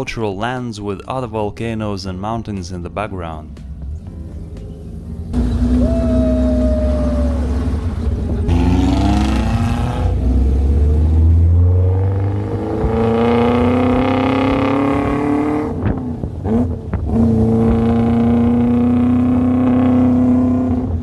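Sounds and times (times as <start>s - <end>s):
car engine shifting gears: 3.5s - 21.0s.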